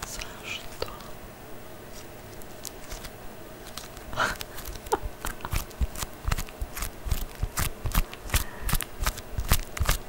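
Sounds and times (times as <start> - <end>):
sticky putty crackling: 2.6 - 10.0.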